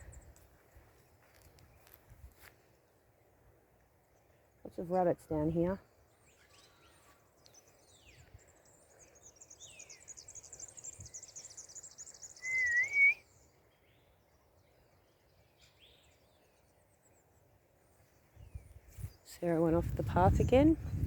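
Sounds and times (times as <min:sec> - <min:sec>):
small birds twittering: 0:04.0 - 0:19.6
loud wavering whistle: 0:12.4 - 0:13.2.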